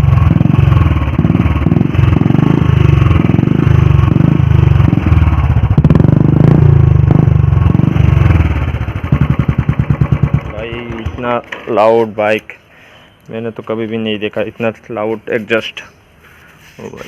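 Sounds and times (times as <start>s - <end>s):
motorcycle engine revving: 0.0s - 11.4s.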